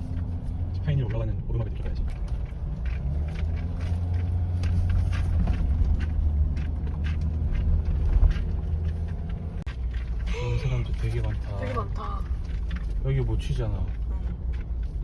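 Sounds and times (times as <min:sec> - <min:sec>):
car engine and road rumble: 0:00.0 - 0:15.0.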